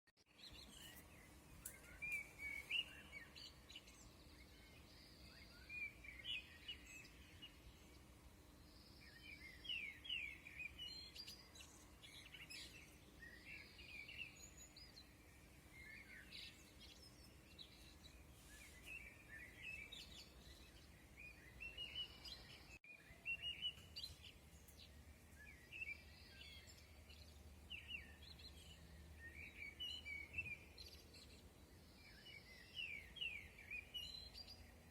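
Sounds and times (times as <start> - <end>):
birds chirping and twittering: 0.3 - 34.9.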